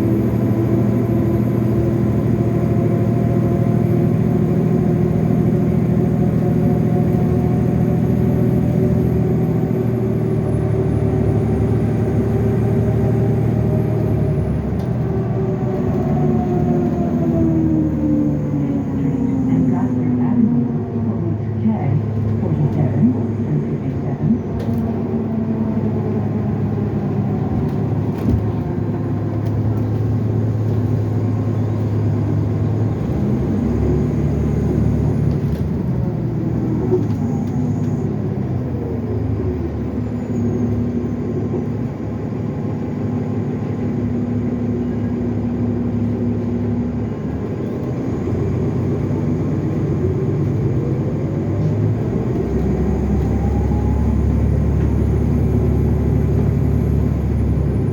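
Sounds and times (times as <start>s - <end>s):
bus diesel engine running: 0.0s - 57.9s.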